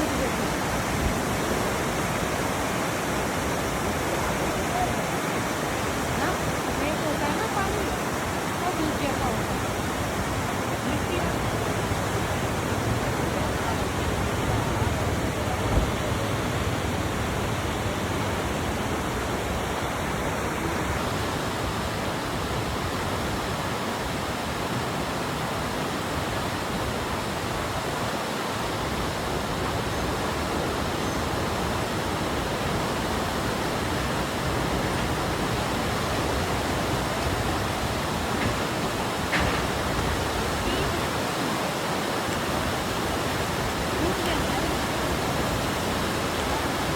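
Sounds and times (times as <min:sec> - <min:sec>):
waterfall rushing: 0:00.0 - 0:46.9
brief knock: 0:38.4 - 0:40.3.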